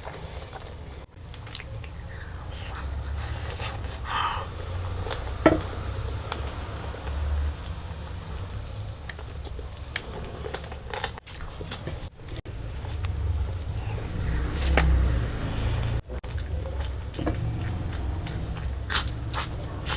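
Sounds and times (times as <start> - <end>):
steady low hum: 0.0 - 10.9
wet chewing: 0.0 - 19.9
mouth clicks and smacks: 0.6 - 5.3.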